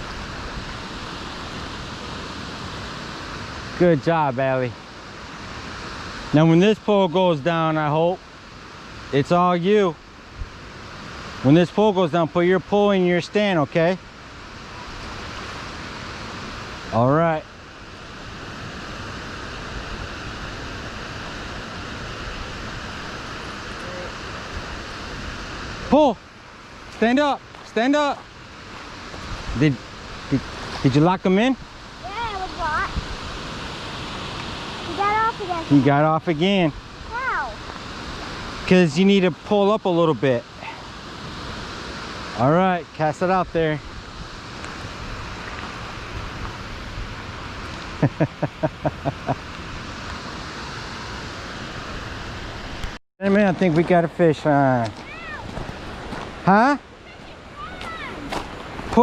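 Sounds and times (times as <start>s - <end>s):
steady rushing noise: 0.0s - 59.0s
wind on microphone: 31.6s - 35.6s.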